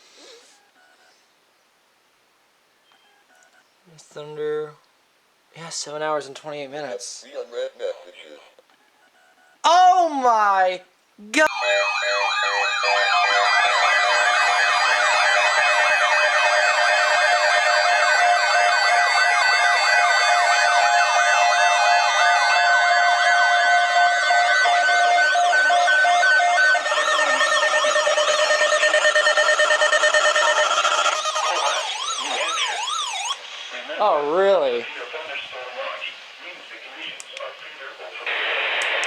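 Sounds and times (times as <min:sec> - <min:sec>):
steady alarm tones: 0:11.5 - 0:33.4
warbling siren-like sweeps: 0:11.5 - 0:33.4.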